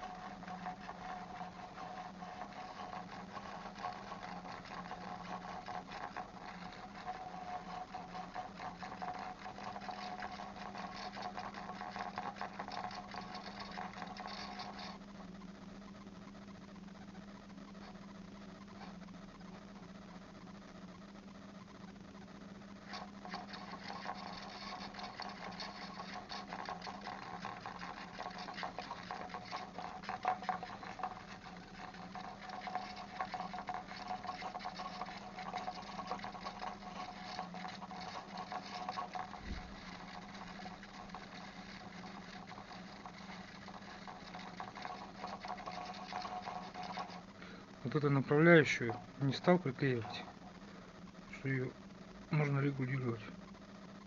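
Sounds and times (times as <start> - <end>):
fishing reel ticking: 0.0 - 15.0, 22.8 - 50.4
steady low hum: 0.0 - 54.0.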